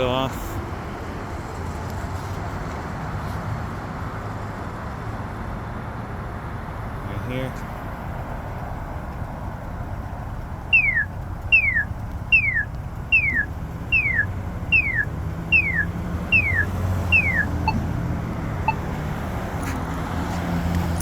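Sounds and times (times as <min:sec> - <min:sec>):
traffic rumble: 0:00.0 - 0:21.0
electronic chirp of crossing signal: 0:10.7 - 0:18.0, 0:18.7 - 0:19.0.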